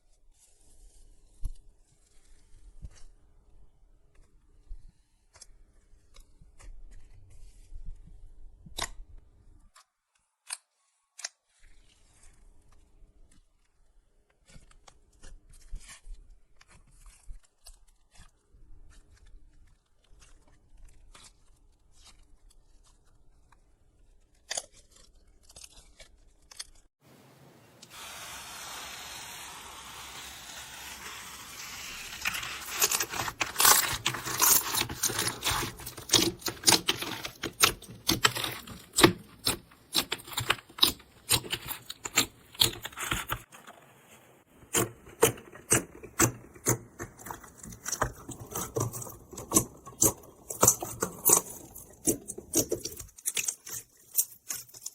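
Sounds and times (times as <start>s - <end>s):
crunchy slime crackling and popping: 29.4s - 43.4s, 44.7s - 54.9s.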